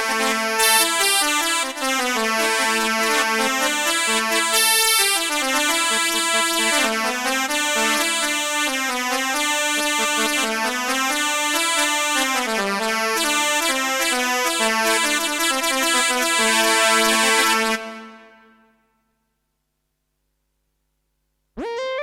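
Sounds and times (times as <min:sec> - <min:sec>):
synthesizer chords and melody: 0:21.6 - 0:22.0.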